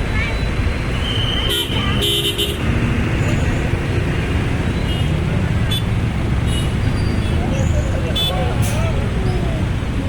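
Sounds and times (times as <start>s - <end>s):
road traffic engine rumble: 0.0s - 10.0s
multi-tone bus horn toot: 1.0s - 2.6s.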